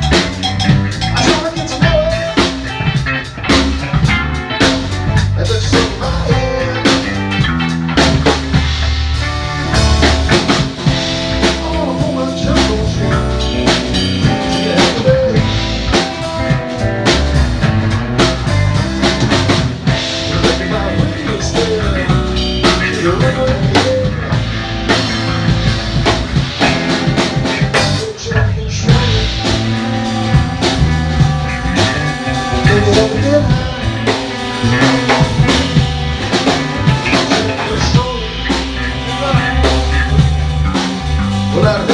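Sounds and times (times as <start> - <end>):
drum kit beating: 0.0 - 28.2, 28.9 - 41.9
guitar: 0.0 - 41.9
live band playing: 0.0 - 41.9
person singing: 5.4 - 7.3, 11.4 - 16.0, 20.1 - 24.4, 28.0 - 41.9.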